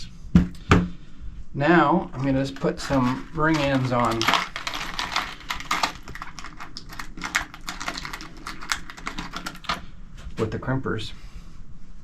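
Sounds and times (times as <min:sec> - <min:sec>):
ring terminals clicking and rattling: 0:02.2 - 0:09.8.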